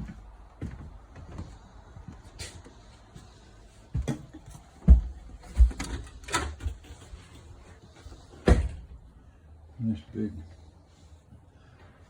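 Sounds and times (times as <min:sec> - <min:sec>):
footsteps on hollow floor: 0:00.0 - 0:08.4.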